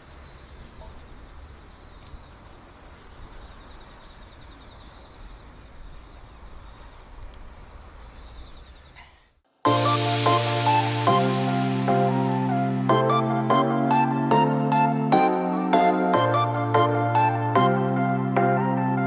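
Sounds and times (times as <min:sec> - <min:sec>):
faint high chirping calls: 0:00.0 - 0:09.2
electronic music: 0:09.7 - 0:19.0.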